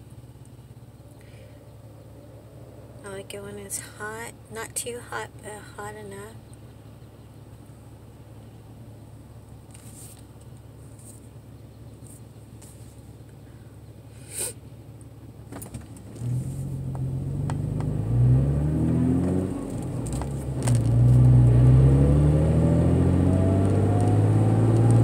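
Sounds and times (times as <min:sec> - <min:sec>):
car engine accelerating: 0:15.3 - 0:25.0
click inside car: 0:16.9 - 0:18.0, 0:23.3 - 0:25.0.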